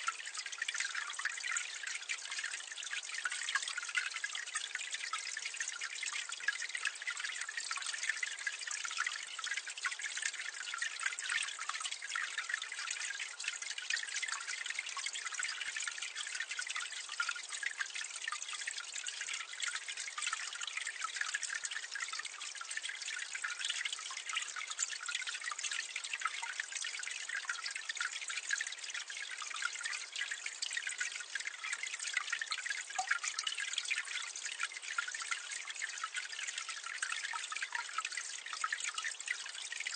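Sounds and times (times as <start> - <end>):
water splashing into a drain: 0.0 - 39.9.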